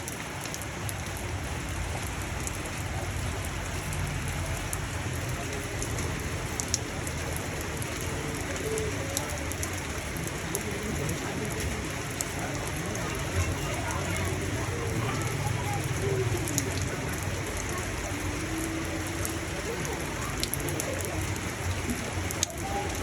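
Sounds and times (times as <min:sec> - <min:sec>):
rain drops ticking on surface: 0:00.0 - 0:23.0.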